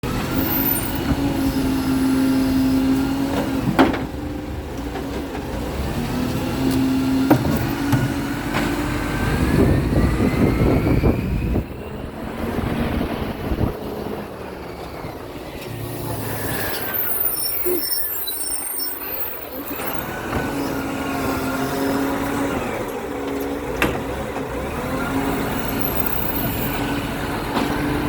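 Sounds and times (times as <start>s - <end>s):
garbage truck engine drone: 0.0s - 28.0s
high-pitched whine: 13.0s - 20.3s.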